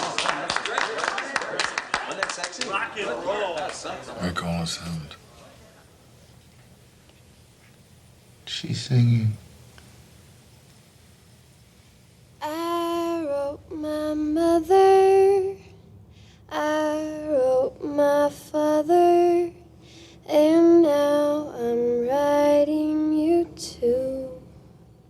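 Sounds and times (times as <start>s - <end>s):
woman singing alone: 12.4s - 15.7s, 16.5s - 19.6s, 20.2s - 24.5s.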